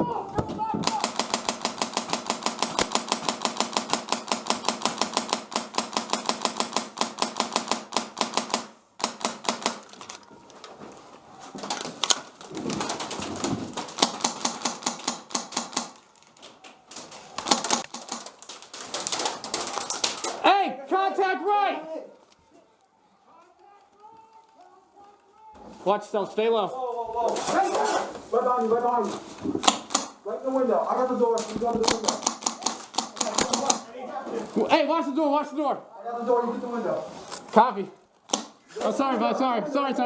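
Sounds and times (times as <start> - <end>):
airsoft rifle firing bursts: 0.8 - 10.0, 12.8 - 16.0, 17.4 - 20.3, 29.6 - 30.2, 31.8 - 33.9.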